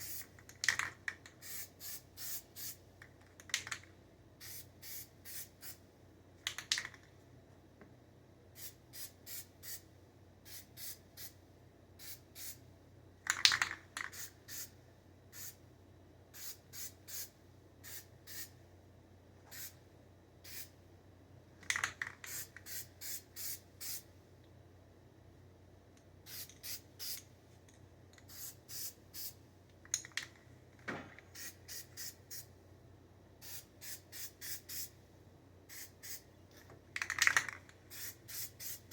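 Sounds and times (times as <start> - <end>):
aerosol spray paint hissing: 0.0 - 0.3, 1.4 - 2.8, 4.4 - 5.8, 22.3 - 24.0, 28.3 - 29.4, 31.3 - 32.5, 33.4 - 34.9, 35.7 - 36.2, 37.9 - 38.9.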